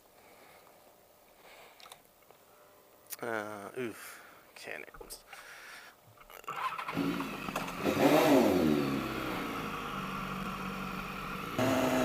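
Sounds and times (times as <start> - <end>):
motorcycle engine revving and idling: 6.5 - 12.0
steady engine drone: 6.9 - 12.0.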